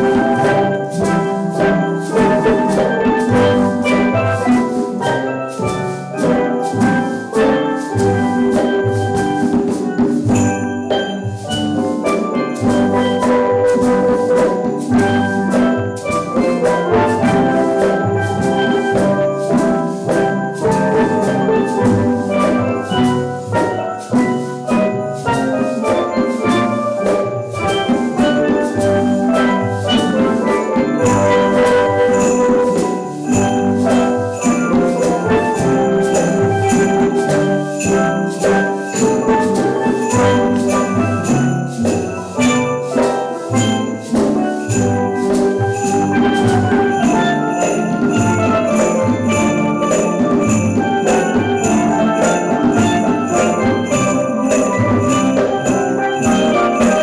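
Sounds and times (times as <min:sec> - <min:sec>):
drum beat: 0:00.0 - 0:57.0
steel drum band: 0:00.0 - 0:57.0.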